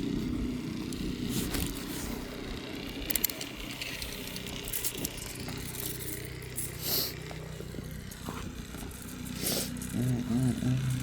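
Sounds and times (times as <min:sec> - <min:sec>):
engine running: 0:00.0 - 0:11.0
short clicks and crunches: 0:02.9 - 0:07.4.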